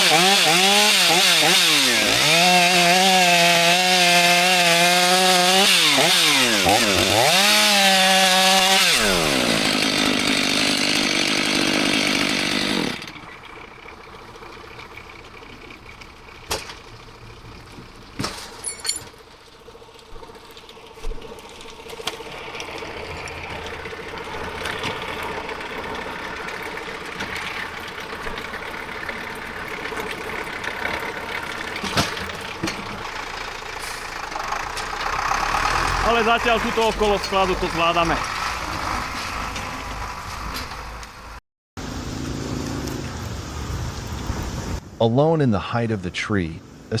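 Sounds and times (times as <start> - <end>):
chainsaw cutting wood: 0.0 - 13.3, 20.1 - 41.2
steady engine hum: 0.0 - 45.0.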